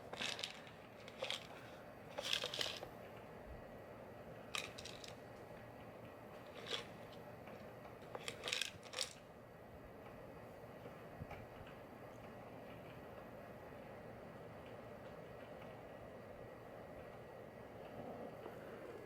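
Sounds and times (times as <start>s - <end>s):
toy clicking and rattling: 0.0s - 2.9s, 4.5s - 5.2s, 6.4s - 7.2s, 8.1s - 9.2s.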